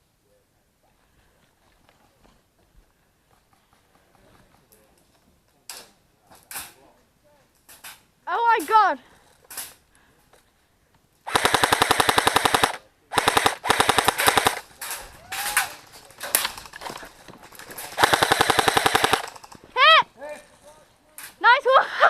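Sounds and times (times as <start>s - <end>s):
airsoft rifle firing: 11.3s - 14.8s, 17.9s - 19.5s.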